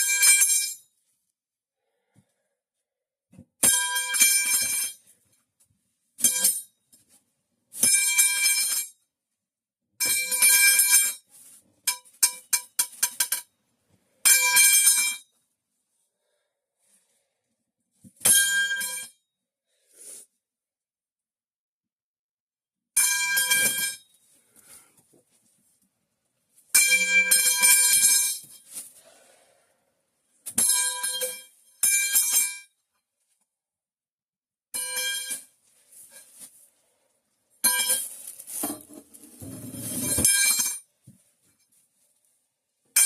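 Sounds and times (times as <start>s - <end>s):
metal pipe clanging: 11.9s - 13.5s.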